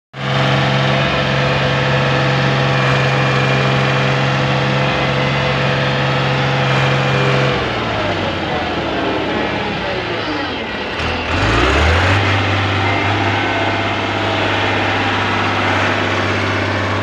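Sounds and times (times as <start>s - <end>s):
diesel engine idling: 0.2s - 17.0s.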